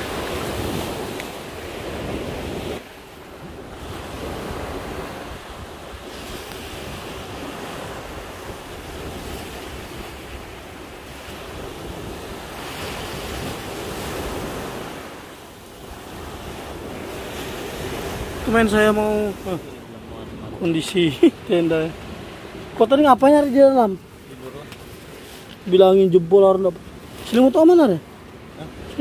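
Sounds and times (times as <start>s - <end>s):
wind buffeting microphone: 0.0s - 23.0s
heavy surf breaking: 0.0s - 29.0s.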